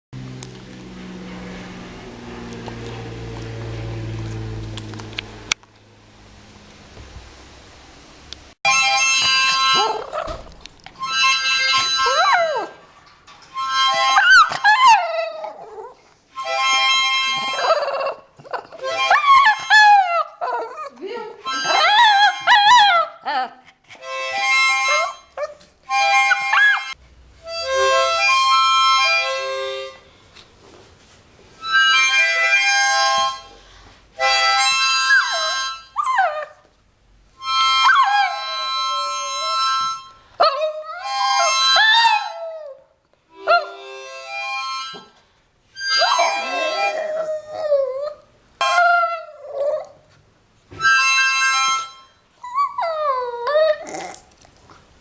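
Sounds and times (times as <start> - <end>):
harmonica playing chords: 8.7 - 12.4, 13.5 - 14.7, 16.3 - 18.0, 21.4 - 22.5, 24.0 - 30.2, 31.6 - 36.0, 37.3 - 42.4, 43.3 - 47.2, 50.7 - 52.3
dog howling: 17.5 - 21.0, 40.4 - 42.8.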